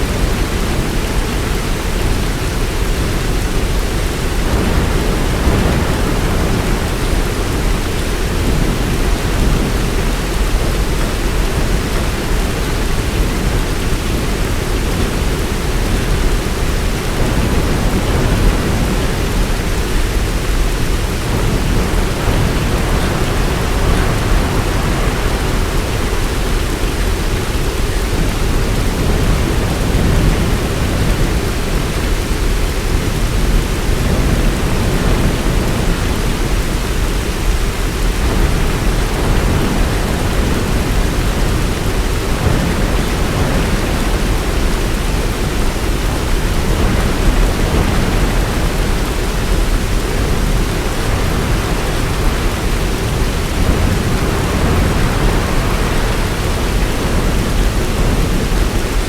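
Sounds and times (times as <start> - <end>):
heavy rain hissing: 0.0 - 59.0.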